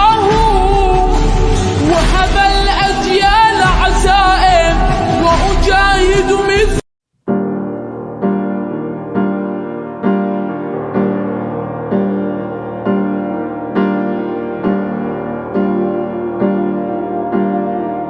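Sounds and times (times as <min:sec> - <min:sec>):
slow piano chords: 0:07.3 - 0:18.0
sung melody over accompaniment: 0:07.3 - 0:18.0.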